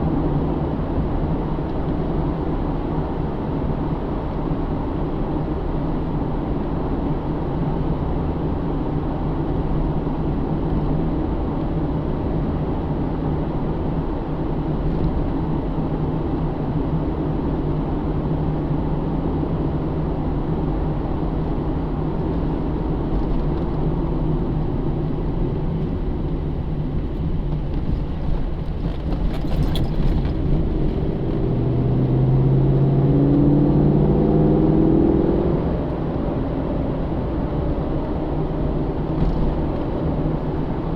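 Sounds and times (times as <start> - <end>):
car engine droning: 0.0 - 40.9
tyre and road noise: 22.0 - 35.9, 37.5 - 40.9.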